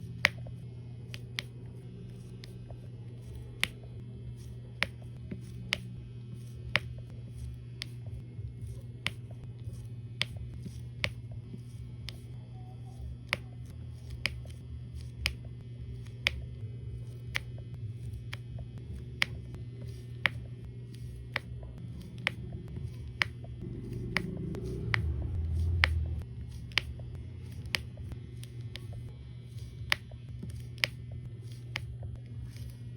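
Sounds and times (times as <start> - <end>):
low rumble: 0.0 - 20.9, 21.5 - 32.9
steady low hum: 0.0 - 32.9.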